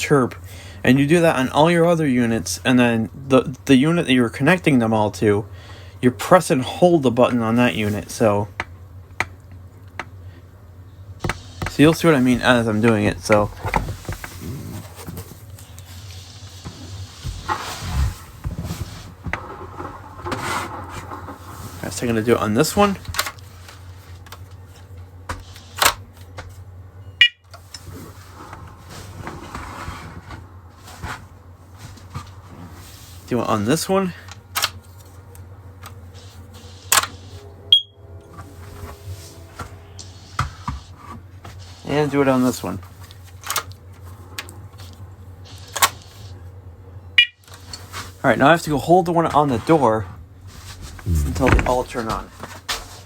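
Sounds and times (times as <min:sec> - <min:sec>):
steady low hum: 0:00.0 - 0:53.0
smoke alarm high chirp: 0:27.1 - 0:27.4, 0:37.7 - 0:38.0, 0:47.2 - 0:47.4.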